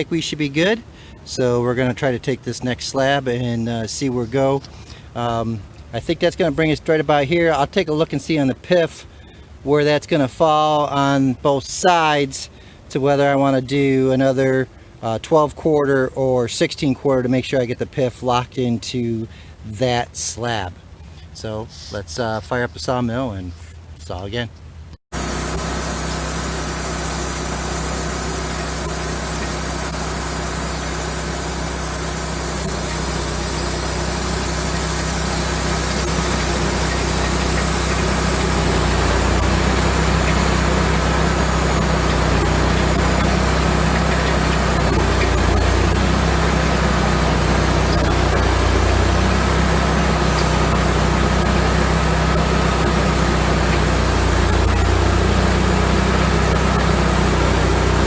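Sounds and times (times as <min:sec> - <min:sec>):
bandsaw sawmill engine droning: 0:25.1 - 0:58.0.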